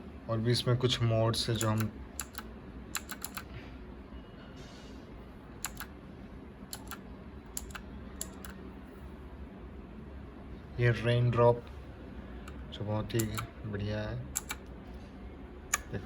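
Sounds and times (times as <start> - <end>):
mechanical keyboard clicks: 1.6 - 3.5, 5.6 - 5.9, 6.7 - 8.6, 13.2 - 13.5, 14.4 - 14.7.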